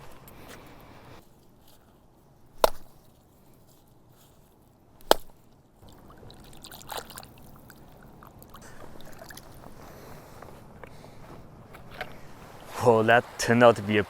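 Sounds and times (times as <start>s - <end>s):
rustling: 0.0s - 5.9s, 7.6s - 13.5s
sharp knock: 2.6s - 2.9s
water sloshing and trickling: 5.8s - 10.2s.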